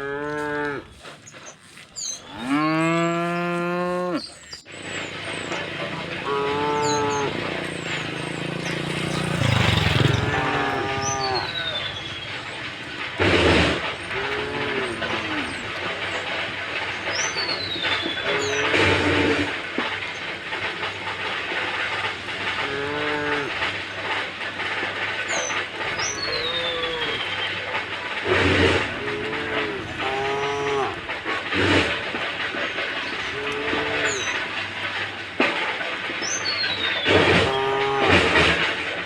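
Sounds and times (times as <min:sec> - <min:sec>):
cattle mooing: 0:00.0 - 0:01.1, 0:02.2 - 0:04.6, 0:05.5 - 0:15.8, 0:18.2 - 0:19.5, 0:22.4 - 0:23.8, 0:26.0 - 0:27.4, 0:28.2 - 0:32.4, 0:33.2 - 0:34.6, 0:37.1 - 0:38.8
bird chirps: 0:00.9 - 0:13.0, 0:16.9 - 0:19.3, 0:25.2 - 0:27.7, 0:36.2 - 0:37.6
loud rushing noise: 0:04.8 - 0:39.0.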